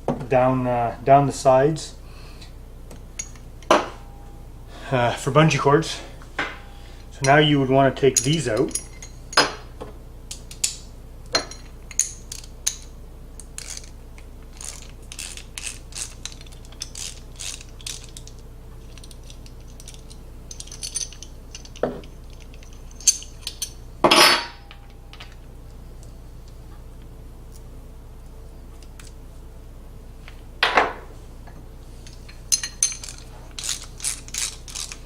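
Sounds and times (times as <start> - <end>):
metal hardware clicking and clinking: 2.9 - 3.9, 8.1 - 9.6, 14.6 - 25.4, 32.0 - 35.0.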